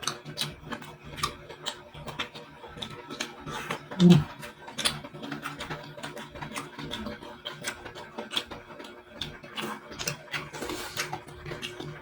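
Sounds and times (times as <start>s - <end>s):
person chewing food: 0.0s - 12.0s.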